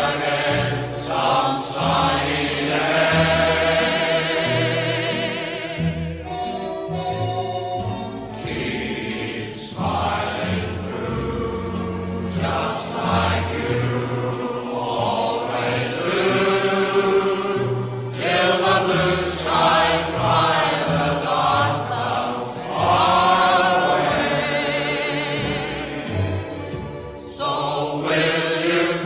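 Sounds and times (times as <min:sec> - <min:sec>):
singing voices with vibrato: 0:00.0 - 0:06.4, 0:08.3 - 0:29.0.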